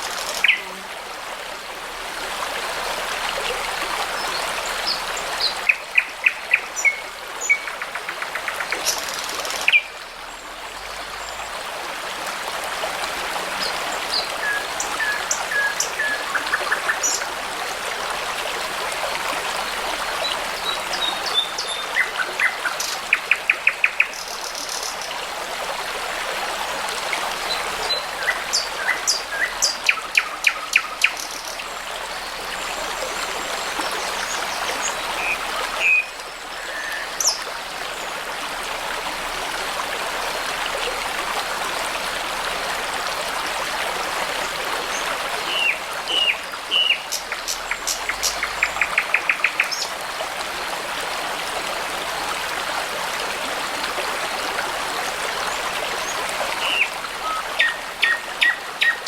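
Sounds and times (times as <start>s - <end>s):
songbirds singing: 0.0s - 0.8s, 27.0s - 38.2s, 44.8s - 50.0s, 55.4s - 59.0s
babbling brook: 0.0s - 59.0s.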